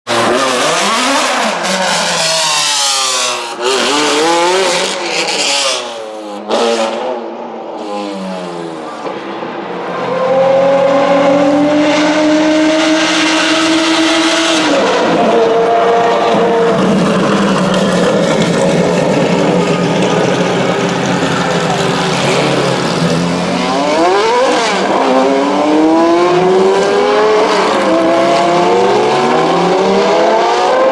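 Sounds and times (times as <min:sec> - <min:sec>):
sports car engine revving: 0:10.3 - 0:30.9.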